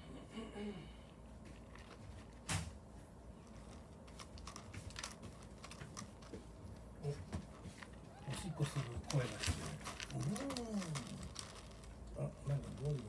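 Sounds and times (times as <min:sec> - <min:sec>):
kitten scratching in litter: 0:03.0 - 0:13.0.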